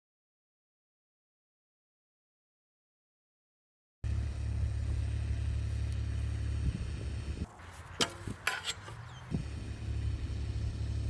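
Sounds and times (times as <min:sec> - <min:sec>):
steady low rumble: 0:04.0 - 0:08.5, 0:09.2 - 0:11.0
sharp knocks: 0:07.9 - 0:09.1.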